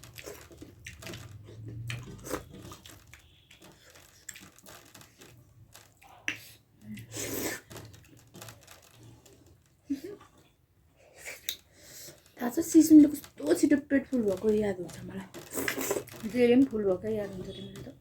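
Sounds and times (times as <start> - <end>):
person chewing food: 0.0 - 12.4, 15.3 - 16.3.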